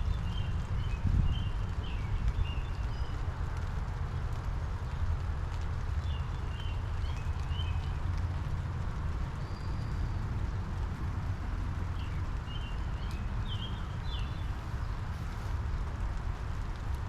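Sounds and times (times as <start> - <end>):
low steady rumble: 0.0 - 17.0
rain hissing: 0.4 - 17.0
bird chirping: 12.0 - 15.0.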